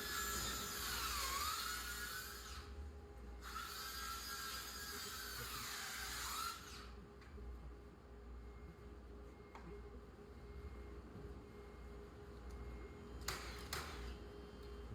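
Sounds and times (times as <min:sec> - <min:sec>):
power drill whining: 0:00.0 - 0:02.8, 0:03.4 - 0:07.0.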